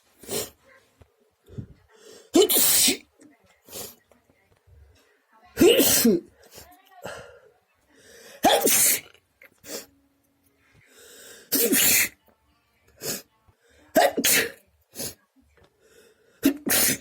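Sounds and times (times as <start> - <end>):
person sneezing: 2.1 - 3.0, 5.6 - 6.2, 8.4 - 9.1, 11.5 - 12.2, 14.0 - 15.2, 16.4 - 17.0.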